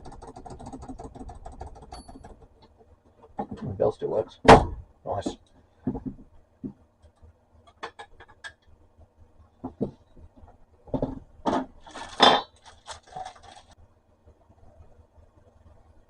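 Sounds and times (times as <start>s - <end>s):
typewriter clatter and rattle: 0.0s - 2.6s, 11.9s - 13.8s.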